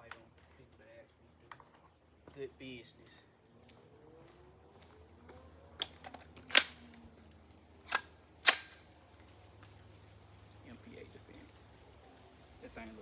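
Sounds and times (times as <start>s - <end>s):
gunshots: 7.9s - 8.8s.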